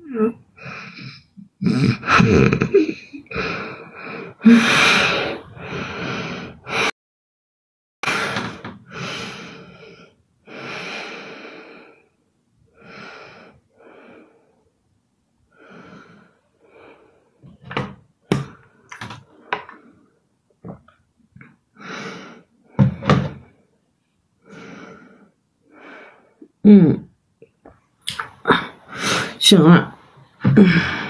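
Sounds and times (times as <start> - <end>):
woman snoring breathily: 0.0 - 6.9, 8.0 - 12.2.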